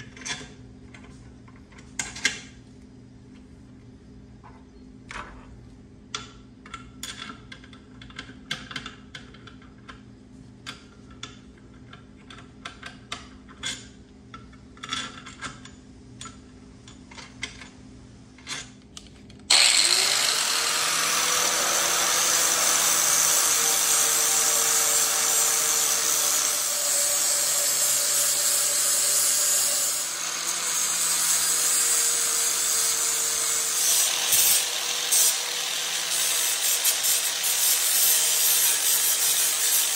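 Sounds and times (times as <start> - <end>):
tools handled with clicks and knocks: 6.1 - 10.0, 10.6 - 17.8
handheld power tool running: 19.5 - 39.9.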